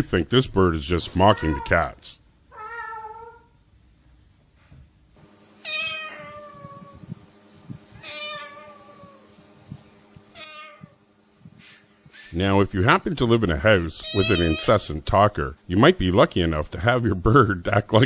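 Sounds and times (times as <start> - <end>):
parakeet imitating meows: 2.5 - 3.5, 5.6 - 7.1, 8.0 - 9.3, 10.3 - 11.0, 14.0 - 14.8.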